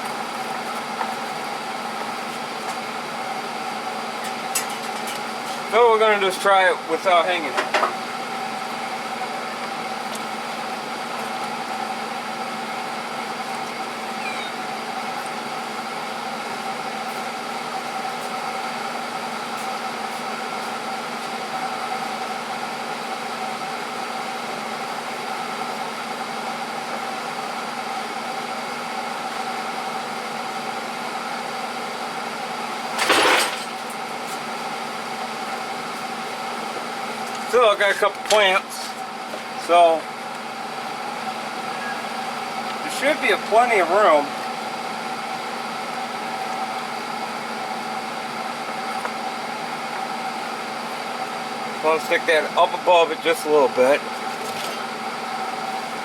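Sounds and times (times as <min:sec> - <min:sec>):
loud clatter: 0:33.0 - 0:33.8.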